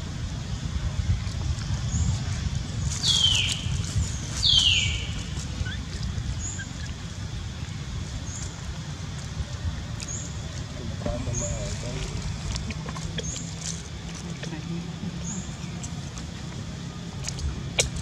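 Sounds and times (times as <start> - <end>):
steady low rumble: 0.0 - 18.0
baby monkey crying calls: 4.4 - 6.9.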